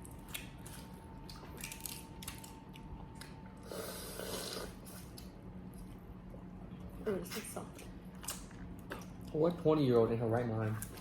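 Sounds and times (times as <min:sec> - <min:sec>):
shells cracking while peeling: 0:00.0 - 0:03.4.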